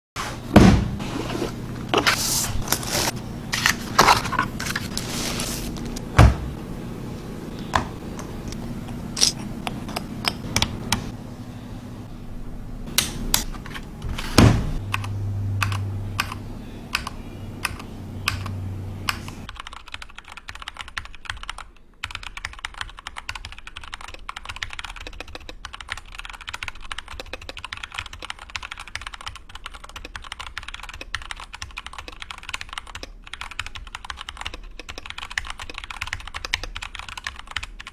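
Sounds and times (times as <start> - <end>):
mechanical keyboard typing: 14.8 - 18.5, 19.1 - 37.9.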